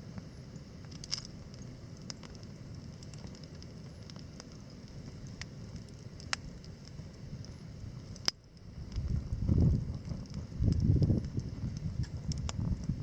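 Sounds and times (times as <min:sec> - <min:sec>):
campfire crackling: 0:00.0 - 0:13.0
fire popping: 0:00.1 - 0:13.0.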